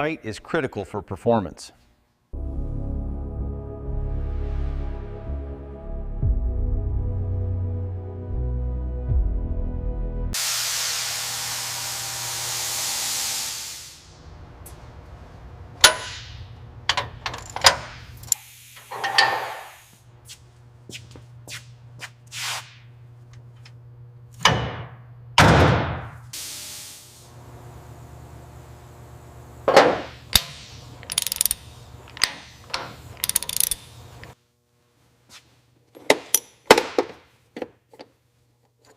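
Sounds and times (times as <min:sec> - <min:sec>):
loud spraying hiss: 0:10.4 - 0:14.1
low steady hum: 0:14.1 - 0:18.4
hand tools clicking on metal: 0:30.3 - 0:34.4.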